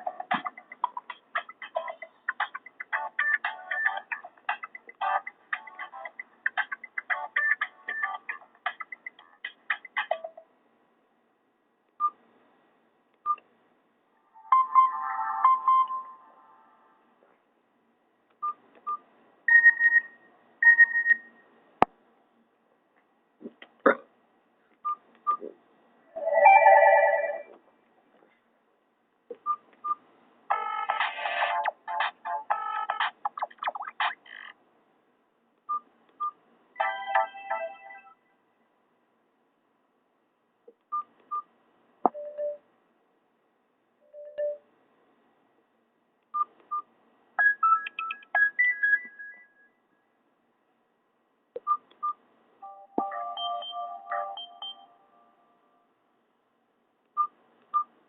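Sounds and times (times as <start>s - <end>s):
phone ringtone and alert tones: 0.0s - 9.3s, 14.3s - 17.0s, 26.2s - 27.5s, 30.5s - 33.9s, 36.8s - 38.2s, 52.6s - 55.4s
phone tone from speaker: 26.2s - 27.5s
keypad beeps: 42.1s - 42.6s, 47.4s - 49.2s, 53.0s - 55.0s
electronic beeps: 53.4s - 55.1s.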